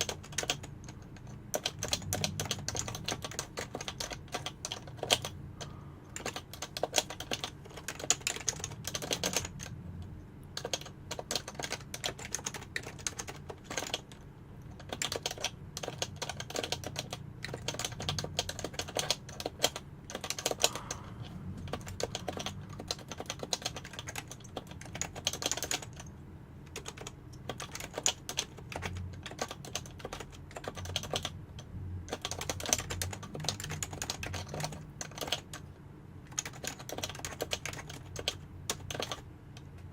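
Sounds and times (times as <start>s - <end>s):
typing on keyboard: 0.0s - 39.9s.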